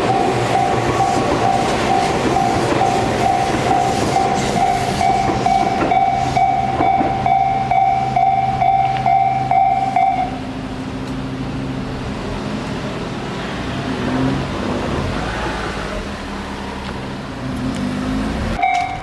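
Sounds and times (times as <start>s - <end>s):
crossing warning bell ringing: 0.0s - 10.6s, 18.6s - 19.0s
train clattering over crossing: 0.0s - 11.2s, 18.6s - 19.0s.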